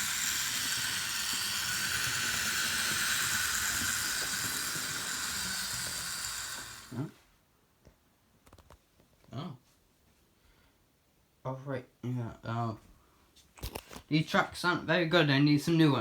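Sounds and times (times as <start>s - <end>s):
model train motor whirring: 0.0s - 7.2s.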